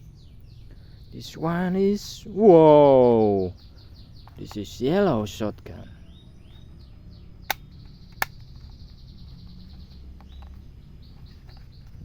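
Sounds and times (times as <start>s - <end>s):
birds chirping: 0.0s - 12.0s
sharp clicks: 7.4s - 8.8s.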